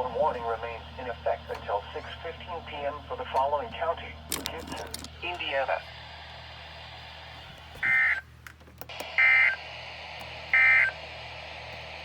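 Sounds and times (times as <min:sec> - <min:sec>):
screechy digital data tones: 0:07.8 - 0:08.2, 0:09.2 - 0:09.6, 0:10.6 - 0:11.0.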